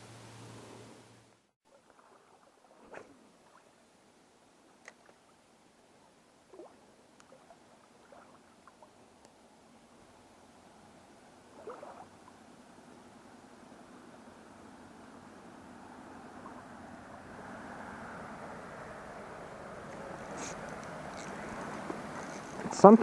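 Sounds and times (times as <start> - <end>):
faint background hiss: 0.0 - 1.8, 2.4 - 23.0
faint ticks: 7.2 - 7.4.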